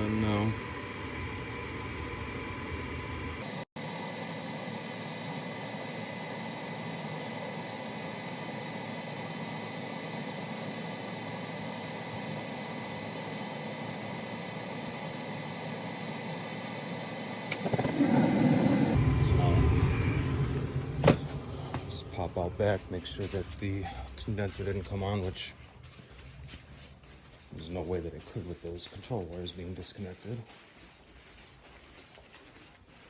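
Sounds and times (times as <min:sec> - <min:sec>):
faint steady whines: 0:00.0 - 0:33.0
furnace humming: 0:00.0 - 0:33.0
low rumbling noise: 0:17.6 - 0:27.0.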